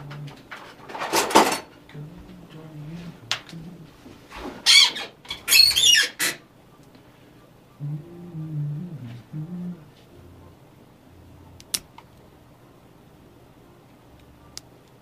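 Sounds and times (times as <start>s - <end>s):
low hummed tone: 0.0s - 0.7s, 1.7s - 4.4s, 6.4s - 15.0s
sharp squeaks: 4.6s - 6.4s.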